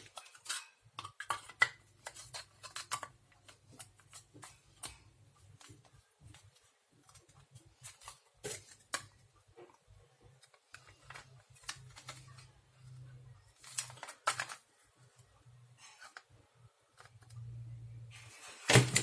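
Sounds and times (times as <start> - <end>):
small parts clicking and rustling: 0.0 - 9.2, 10.3 - 14.7
faint low hum: 14.7 - 18.3.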